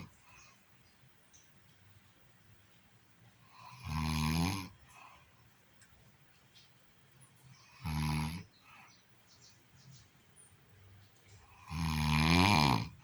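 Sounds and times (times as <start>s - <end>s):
quiet breathing: 0.0s - 6.4s, 7.2s - 9.9s, 10.8s - 13.0s
woman snoring: 3.6s - 4.7s, 11.6s - 13.0s.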